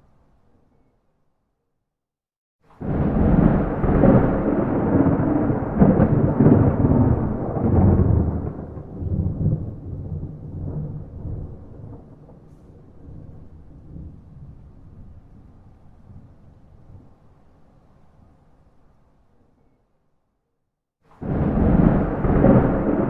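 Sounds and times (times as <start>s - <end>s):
thunder clap rumbling: 2.8s - 17.1s, 21.2s - 23.0s.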